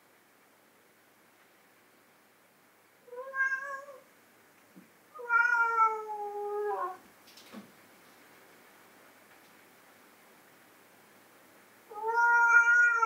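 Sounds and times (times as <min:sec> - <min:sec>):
cat meowing: 0:03.1 - 0:04.0, 0:05.2 - 0:07.0, 0:11.9 - 0:13.0.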